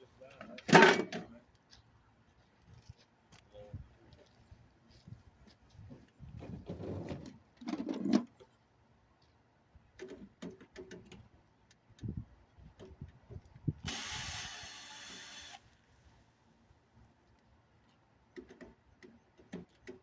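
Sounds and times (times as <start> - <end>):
power drill running: 13.9 - 15.6.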